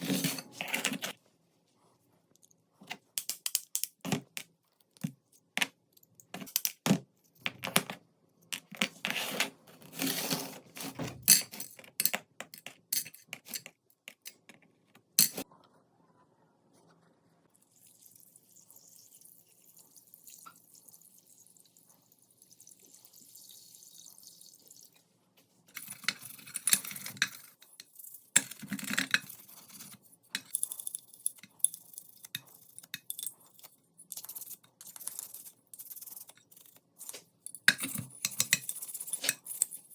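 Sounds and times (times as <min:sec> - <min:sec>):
metal parts clicking and scraping: 0:25.7 - 0:39.9.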